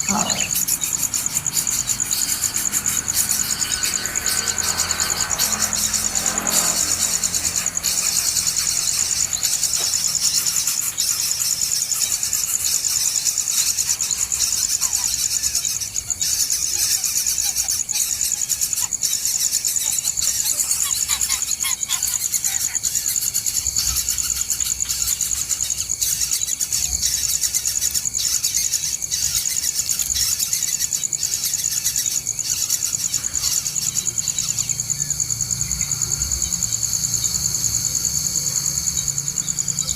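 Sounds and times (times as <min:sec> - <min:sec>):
insect chorus pulsing buzz: 0:00.0 - 0:39.9.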